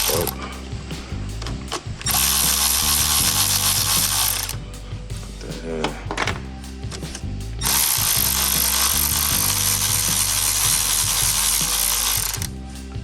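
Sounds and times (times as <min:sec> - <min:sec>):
background music: 0:00.0 - 0:13.0
loud steady rasping noise: 0:00.0 - 0:13.0
ratchet wrench clicking: 0:02.1 - 0:04.6, 0:07.6 - 0:12.5.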